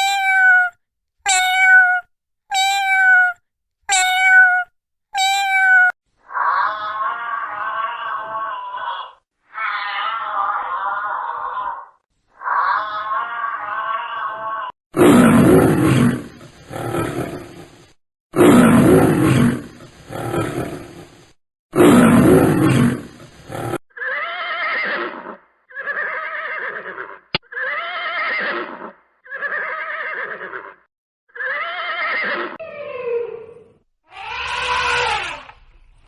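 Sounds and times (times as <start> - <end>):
short pitched animal calls: 0.0 - 0.7, 1.3 - 5.9
loud rough animal call: 34.1 - 35.5.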